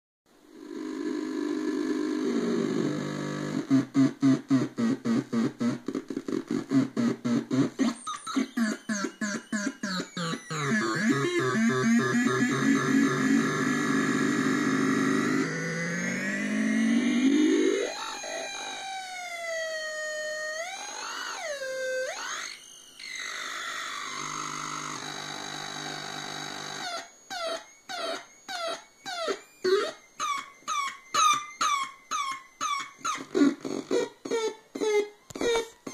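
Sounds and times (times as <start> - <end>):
buzzing electronic synthesizer drone: 1.2 - 34.2
noisy synthesizer drone: 3.5 - 19.4.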